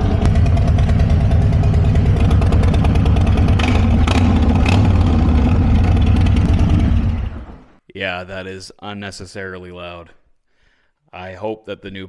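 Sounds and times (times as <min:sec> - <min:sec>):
motorcycle engine idling loudly: 0:00.0 - 0:07.7
sharp engine cracks: 0:00.0 - 0:07.7.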